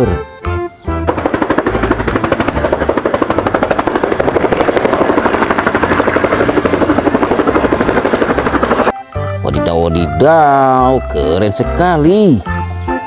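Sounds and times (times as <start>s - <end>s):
toy helicopter rotor sound effect: 1.2s - 8.9s.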